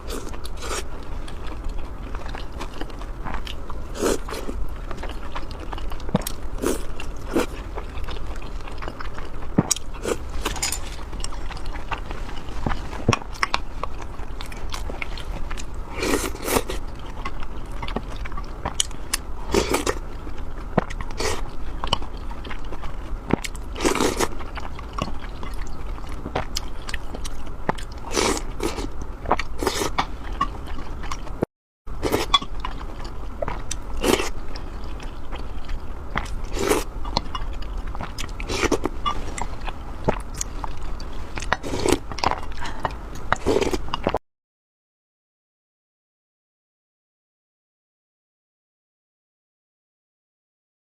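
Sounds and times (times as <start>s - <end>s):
person chewing: 0.0s - 31.4s, 32.0s - 44.2s
loud crunchy bite: 23.3s - 24.4s, 28.0s - 30.1s, 36.2s - 37.4s, 38.1s - 39.5s.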